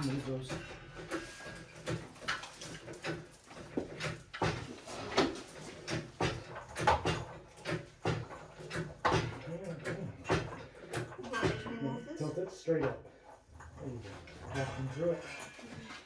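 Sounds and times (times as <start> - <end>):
objects knocking and clunking: 1.8 - 3.6, 7.6 - 7.9.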